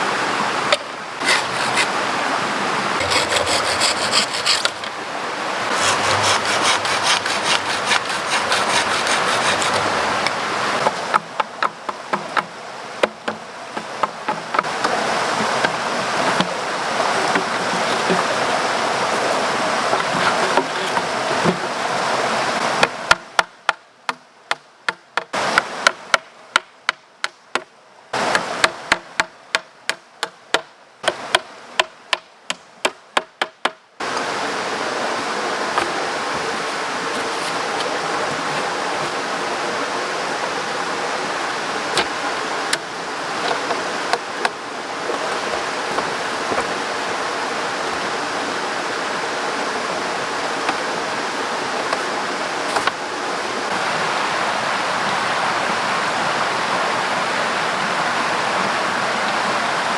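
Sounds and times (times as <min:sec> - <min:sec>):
stream flowing: 0:00.0 - 0:24.6, 0:25.3 - 0:26.6, 0:27.7 - 0:32.1, 0:34.0 - 0:59.9.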